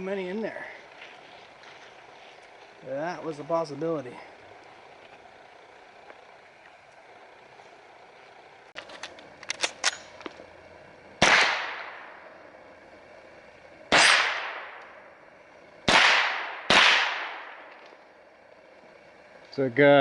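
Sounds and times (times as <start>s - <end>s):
metallic clicks: 8.8s - 10.3s
rifle shots echoing: 11.2s - 12.2s, 13.9s - 14.9s, 15.8s - 17.8s.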